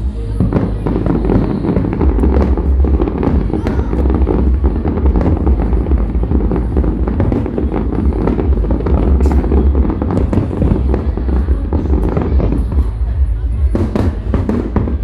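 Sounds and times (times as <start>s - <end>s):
fireworks cracking: 0.0s - 15.0s
low fireworks rumble: 0.0s - 15.0s.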